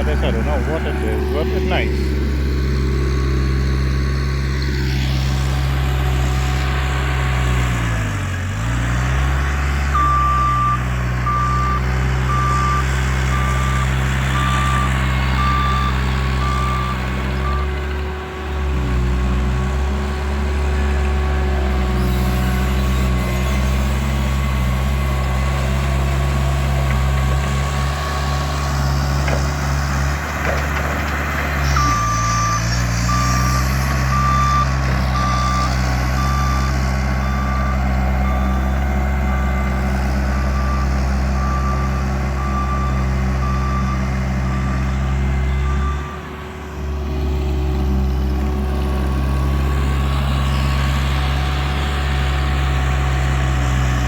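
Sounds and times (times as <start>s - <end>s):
reversing alarm beeping: 0.0s - 4.6s, 9.8s - 17.9s, 31.6s - 46.8s
diesel engine running: 0.0s - 54.0s.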